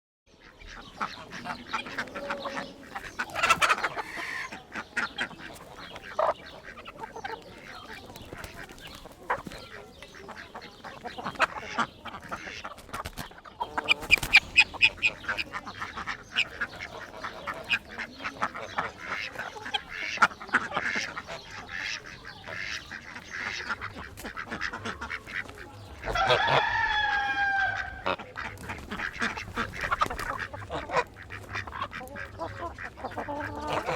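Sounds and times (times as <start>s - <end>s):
chickens clucking and squawking: 0.3s - 33.9s
chicken drawn-out call: 0.6s - 7.5s, 13.6s - 18.3s, 26.0s - 33.9s.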